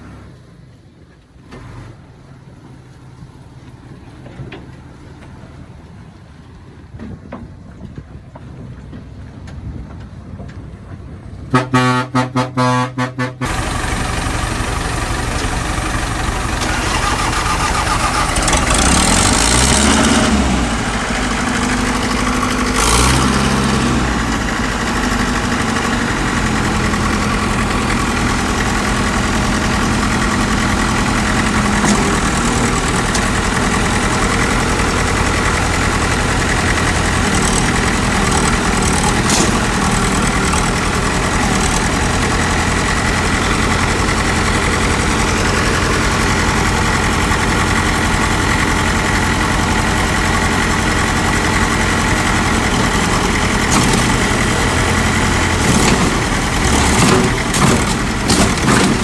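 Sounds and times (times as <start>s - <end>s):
horn beeping: 11.5s - 28.5s
heavy diesel engine revving: 11.6s - 59.0s.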